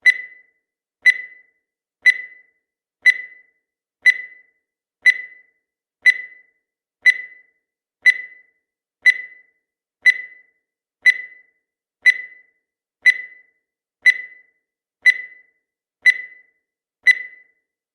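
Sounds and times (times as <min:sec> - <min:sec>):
short high beeps: 0:17.1 - 0:17.5.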